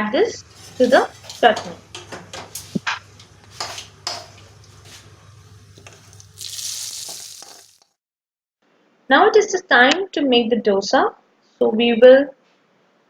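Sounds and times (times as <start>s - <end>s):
oil sizzling hiss: 2.5s - 8.0s
mustard seeds popping in oil: 6.2s - 7.9s.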